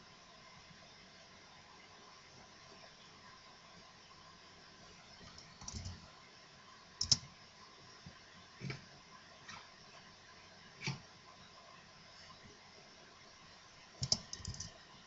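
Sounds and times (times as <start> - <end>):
computer keys or mouse clicks: 5.3 - 6.0, 7.0 - 7.2, 14.0 - 14.7.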